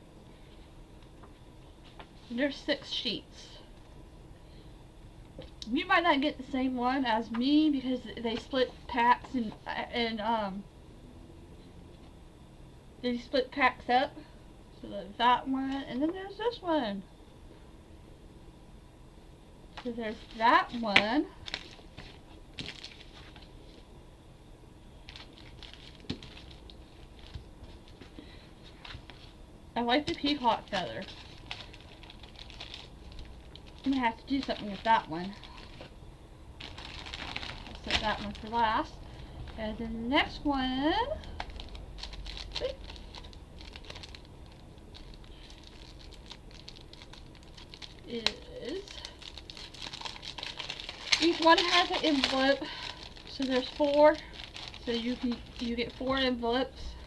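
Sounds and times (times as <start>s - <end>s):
faint paper rustling: 19.8s - 23.9s, 25.0s - 36.0s, 36.6s - 40.0s, 41.2s - 57.0s.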